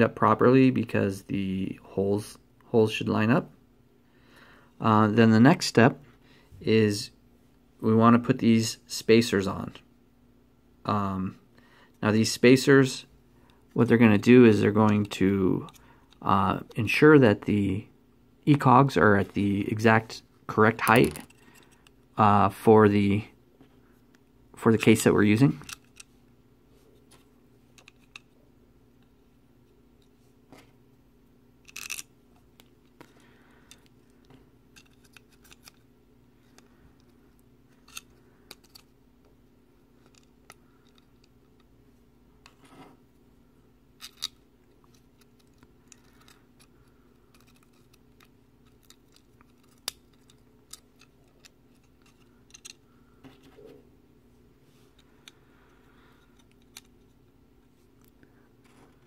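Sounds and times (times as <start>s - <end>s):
faint steady hum: 0.0s - 59.0s.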